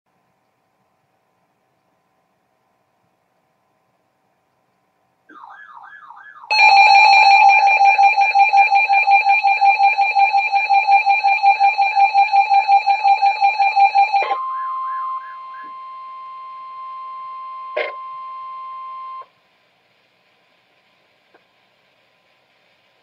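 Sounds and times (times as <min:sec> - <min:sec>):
pulsing alarm: 0:05.3 - 0:19.3
warbling alert tone: 0:13.8 - 0:16.2.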